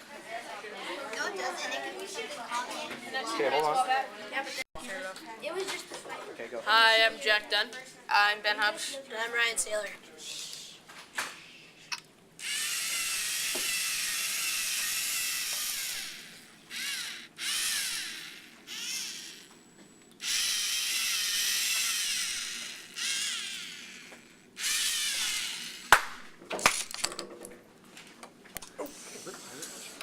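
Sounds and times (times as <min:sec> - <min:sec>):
electric gear motors whining: 0:12.4 - 0:26.0.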